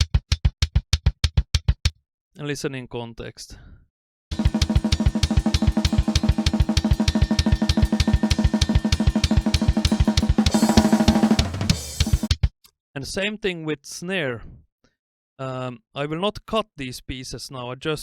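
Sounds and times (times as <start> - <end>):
double-kick drum strokes: 0.0 - 1.9, 4.3 - 12.5
cymbals: 4.3 - 12.3
snare drum: 4.3 - 12.5.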